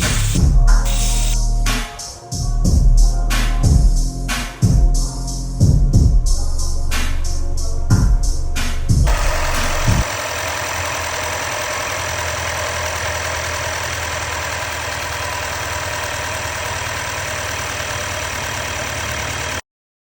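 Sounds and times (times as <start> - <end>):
car engine idling with misfire: 0.0 - 1.4, 9.1 - 19.6.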